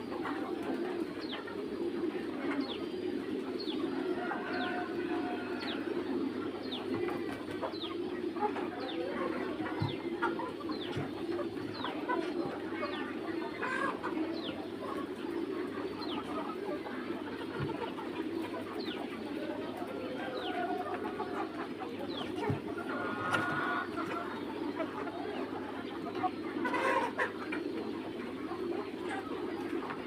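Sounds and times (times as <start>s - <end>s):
chickens clucking: 0.0s - 30.0s.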